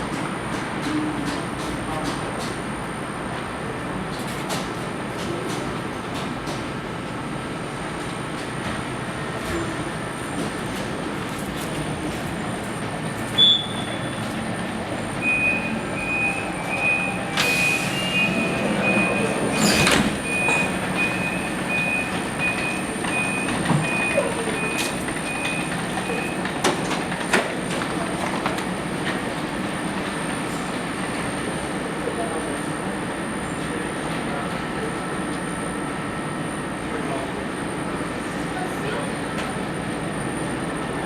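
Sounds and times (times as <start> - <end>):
train hum: 0.0 - 41.0
high-pitched door warning beeps: 13.3 - 14.5, 15.1 - 26.8.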